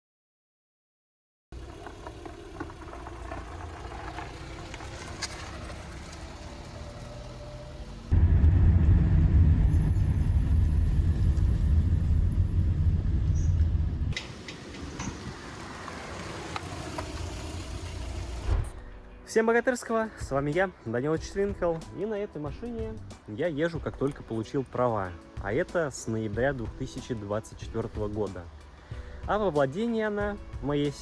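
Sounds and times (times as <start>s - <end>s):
road and tyre rumble: 1.5s - 19.2s, 25.4s - 29.8s
high brake squeal: 9.6s - 15.3s.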